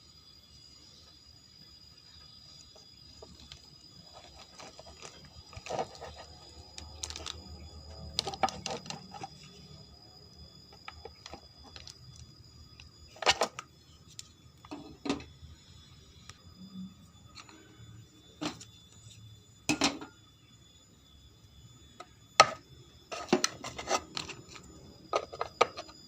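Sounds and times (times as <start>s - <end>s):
tools and parts clattering: 3.2s - 7.5s, 8.1s - 9.5s, 13.1s - 15.3s, 19.7s - 20.2s, 22.4s - 26.0s.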